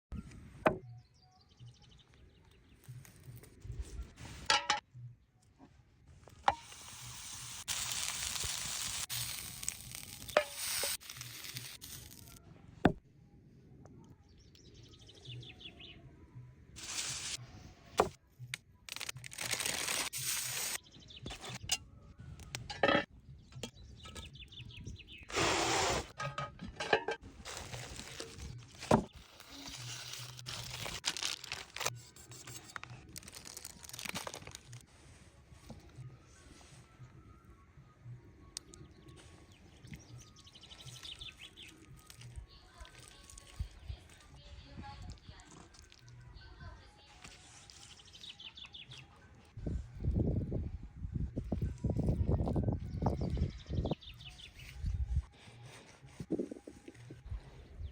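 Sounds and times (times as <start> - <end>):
chicken sizzling in a pan: 6.6 - 11.8.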